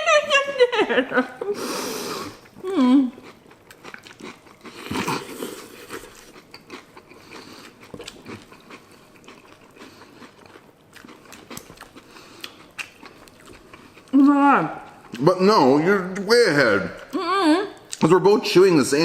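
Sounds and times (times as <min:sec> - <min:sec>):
people chewing crunchy cereal: 0:01.7 - 0:16.2.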